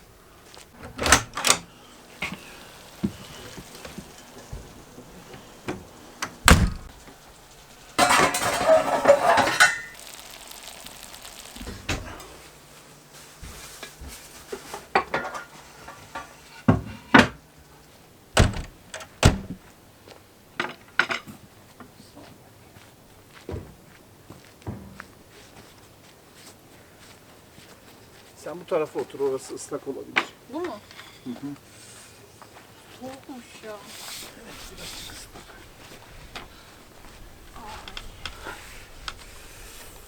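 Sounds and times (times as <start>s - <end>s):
dishes and cutlery clattering: 8.0s - 10.0s.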